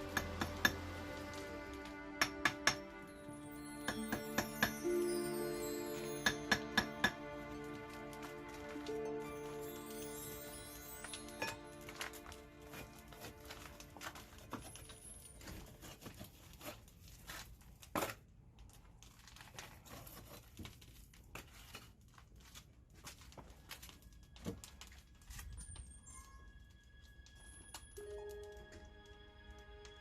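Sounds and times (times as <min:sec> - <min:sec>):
firewood crackling and popping: 0:00.0 - 0:18.0, 0:20.6 - 0:30.0.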